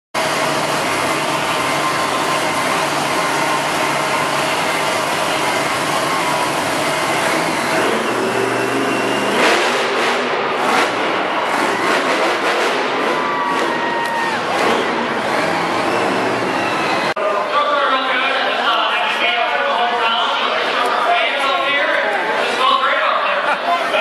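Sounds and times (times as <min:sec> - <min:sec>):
monster truck engine revving: 0:00.2 - 0:18.0.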